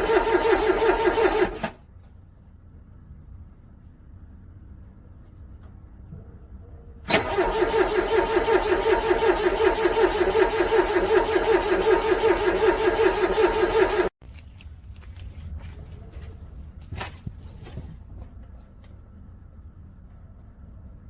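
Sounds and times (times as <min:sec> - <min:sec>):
car engine cranking on starter: 0:00.0 - 0:01.8, 0:07.1 - 0:14.1.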